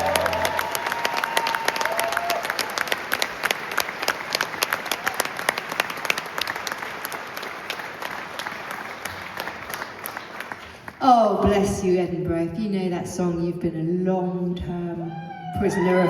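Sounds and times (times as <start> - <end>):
audience applauding: 0.0 - 11.0.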